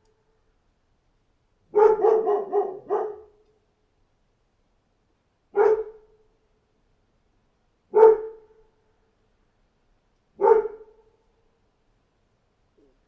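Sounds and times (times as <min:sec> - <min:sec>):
dog barking with echo: 0:01.7 - 0:03.4, 0:05.6 - 0:06.0, 0:07.9 - 0:08.4, 0:10.4 - 0:10.9.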